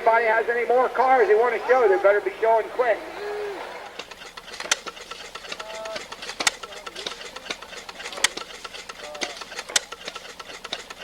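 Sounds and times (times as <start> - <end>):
machine clattering: 3.9 - 11.0
sharp machine click: 3.9 - 11.0.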